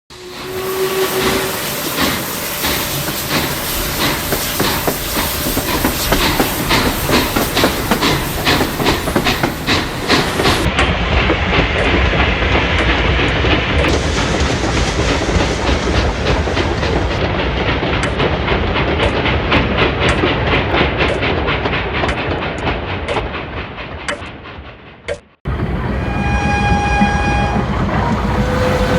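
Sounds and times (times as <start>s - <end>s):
steam hissing: 0.1s - 10.7s, 13.8s - 17.4s, 26.1s - 28.9s
rail clickety-clack: 0.1s - 28.9s
steam locomotive chuffing: 0.1s - 28.9s.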